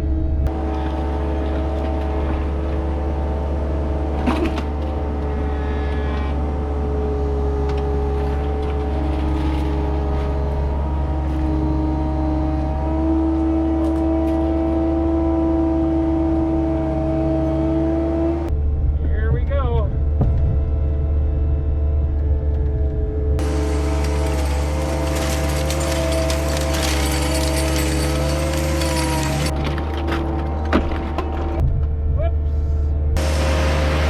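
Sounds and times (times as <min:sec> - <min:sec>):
skid steer engine drone: 0:00.0 - 0:34.0.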